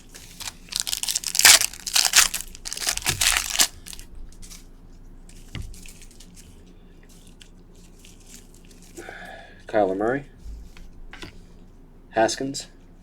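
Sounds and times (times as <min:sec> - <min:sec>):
wrapper crinkling and crumpling: 0:00.0 - 0:04.6.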